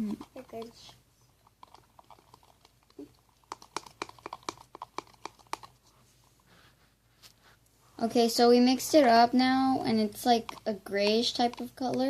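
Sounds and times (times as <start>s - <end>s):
faint clicks and taps of stirring: 0.0s - 5.8s, 9.7s - 12.0s.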